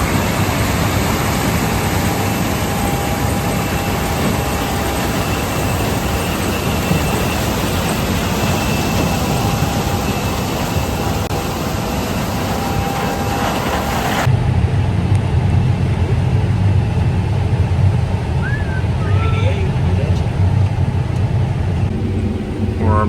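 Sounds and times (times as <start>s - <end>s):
heavy harvest machinery running: 0.0s - 23.0s.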